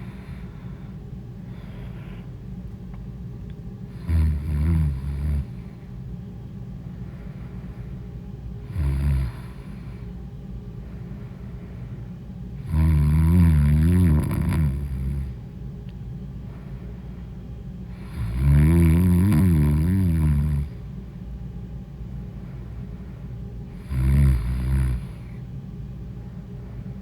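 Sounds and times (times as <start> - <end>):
steady low hum: 0.0 - 27.0
woman snoring: 3.9 - 5.6, 8.6 - 10.0, 12.6 - 15.4, 17.9 - 20.8, 23.8 - 25.4.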